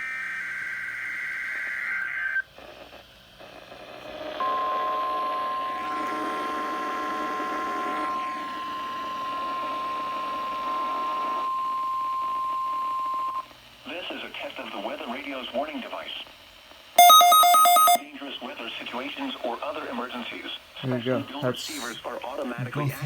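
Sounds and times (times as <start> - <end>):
steady warning alarm tone: 4.4 - 13.5, 17.0 - 18.0
warbling data burst: 17.0 - 18.0.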